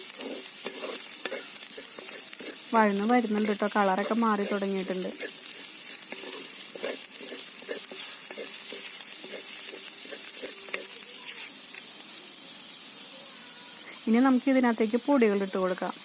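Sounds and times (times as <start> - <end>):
spoon stirring and scraping: 0.0 - 11.5
shallots sizzling in hot oil: 0.0 - 16.0.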